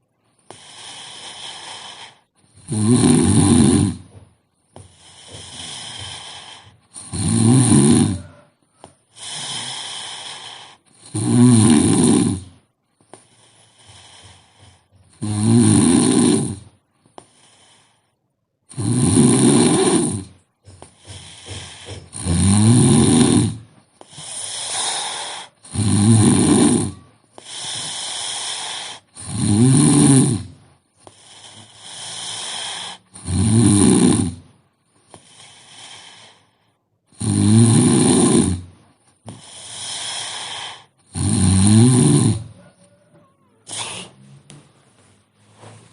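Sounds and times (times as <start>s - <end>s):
quiet breathing: 0.0s - 2.6s, 4.0s - 11.1s, 12.4s - 15.2s, 16.6s - 18.4s, 20.2s - 22.3s, 23.0s - 29.4s, 30.4s - 33.2s, 34.8s - 37.0s
woman snoring: 0.4s - 4.2s, 4.8s - 18.1s, 18.7s - 44.5s.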